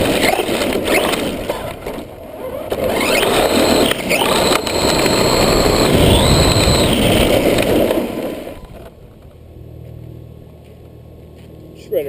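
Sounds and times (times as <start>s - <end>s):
electric motor whining: 2.4s - 9.5s.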